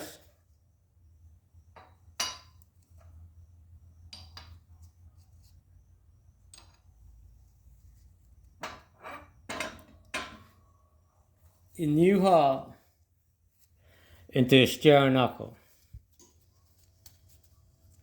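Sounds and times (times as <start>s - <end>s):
metallic clanks and knocks: 8.6s - 10.5s.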